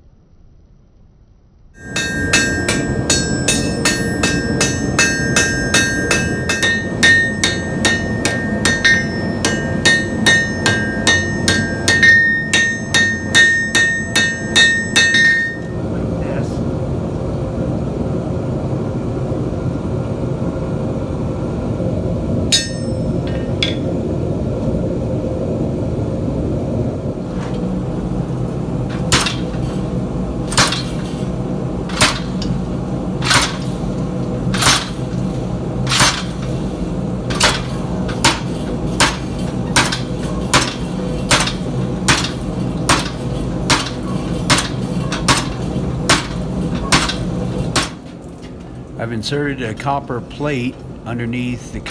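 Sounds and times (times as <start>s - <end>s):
hammer striking chisel on hot steel: 1.8s - 15.8s, 22.5s - 23.9s, 28.8s - 48.1s
ringing metal clink: 1.8s - 15.8s, 22.5s - 23.9s, 28.9s - 32.6s, 33.2s - 48.6s
steady hum: 1.8s - 51.9s.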